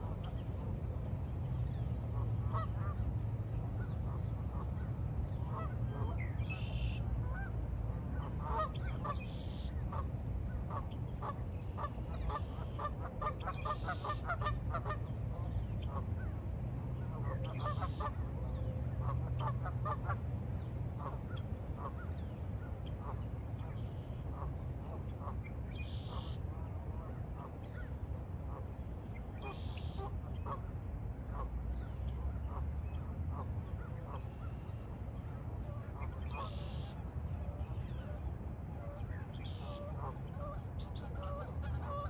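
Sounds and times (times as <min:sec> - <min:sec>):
steady low rumble: 0:00.0 - 0:42.0
geese honking: 0:02.2 - 0:03.0, 0:05.5 - 0:07.5, 0:08.2 - 0:16.3, 0:17.1 - 0:18.2, 0:19.0 - 0:20.2, 0:35.7 - 0:36.9, 0:38.8 - 0:42.0.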